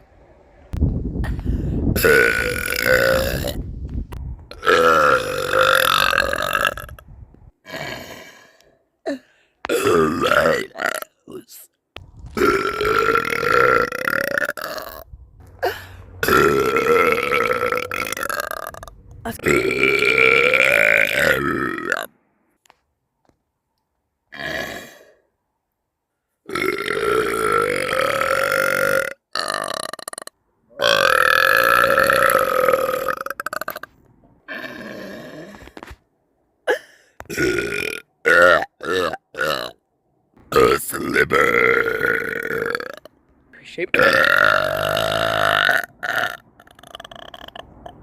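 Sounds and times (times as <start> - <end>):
long loud burps: 2.0 - 3.6, 4.5 - 7.0, 7.6 - 11.2, 12.3 - 22.1, 24.3 - 25.2, 26.5 - 33.9, 34.5 - 35.7, 36.7 - 39.8, 40.6 - 43.1, 44.0 - 47.7.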